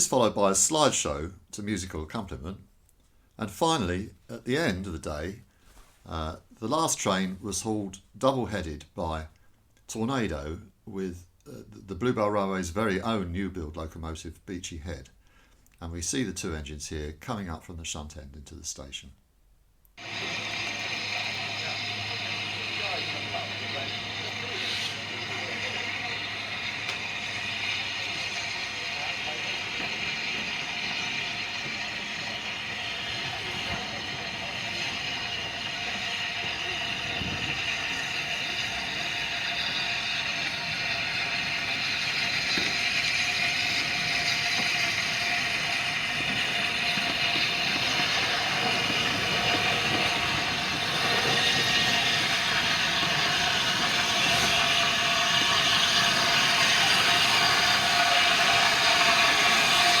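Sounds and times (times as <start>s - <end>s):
steam hissing: 20.0s - 60.0s
steam locomotive running noise: 20.0s - 60.0s.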